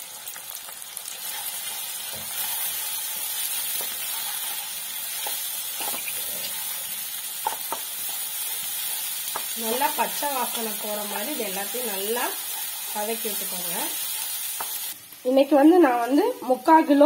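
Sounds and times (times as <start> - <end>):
food sizzling in oil: 0.0 - 17.0
spoon scraping a pan: 1.2 - 6.8.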